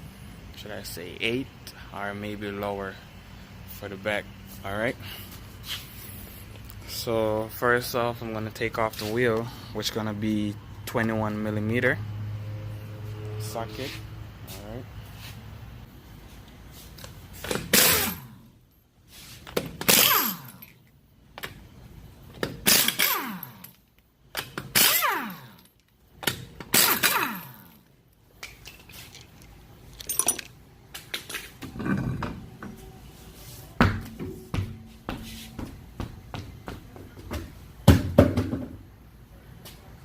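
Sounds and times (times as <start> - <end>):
power wrench whining: 17.4 - 18.4, 19.6 - 20.8, 22.4 - 27.9.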